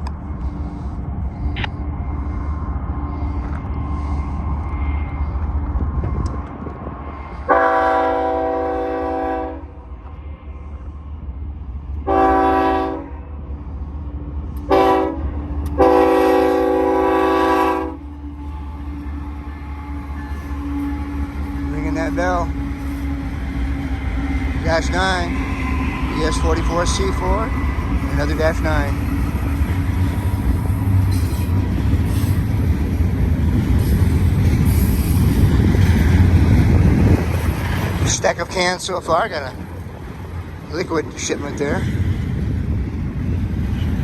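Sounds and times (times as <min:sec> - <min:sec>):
low engine rumble: 0:00.0 - 0:44.0
locomotive air horn: 0:07.5 - 0:09.8, 0:12.0 - 0:13.2, 0:14.6 - 0:18.1, 0:19.4 - 0:24.5.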